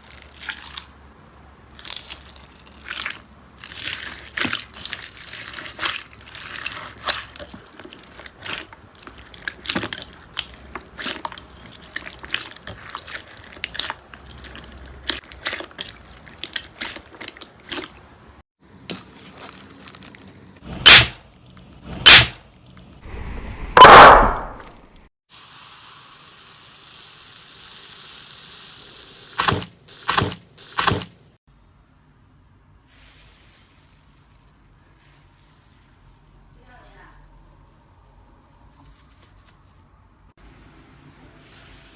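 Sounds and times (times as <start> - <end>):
slime squelch: 0.0 - 1.0, 1.7 - 22.8
sticky slime pops: 20.9 - 21.2, 22.1 - 22.4.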